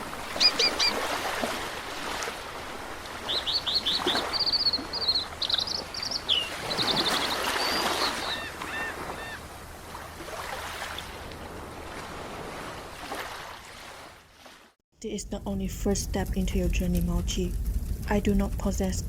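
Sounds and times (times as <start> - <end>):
small birds chirping: 0.4 - 1.0, 3.2 - 9.4.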